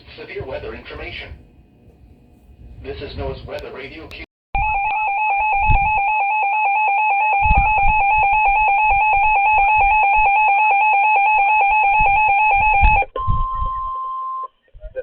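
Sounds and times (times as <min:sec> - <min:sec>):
warbling electronic alarm tone: 0:04.6 - 0:14.2.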